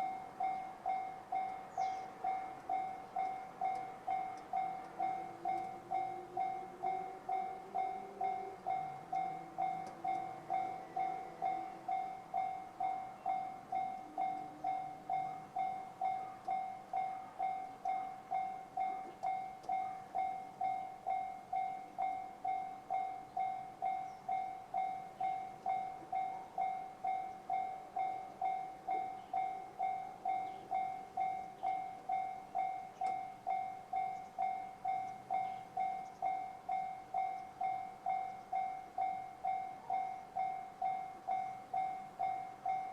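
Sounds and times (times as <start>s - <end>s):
level crossing alarm dinging: 0.0s - 42.9s.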